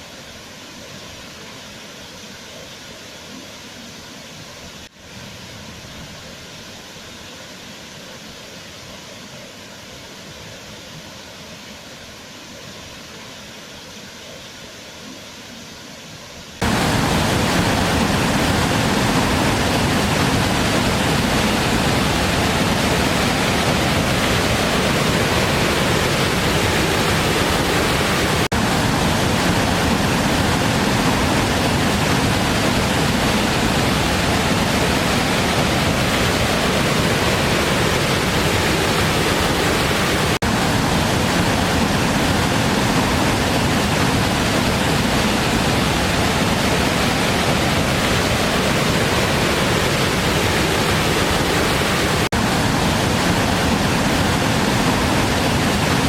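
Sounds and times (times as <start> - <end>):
waterfall rushing: 16.6 - 56.0.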